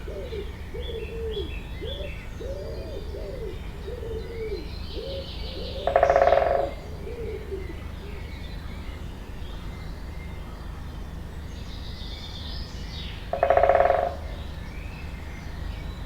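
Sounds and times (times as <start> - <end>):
bird cooing: 0.0 - 8.3.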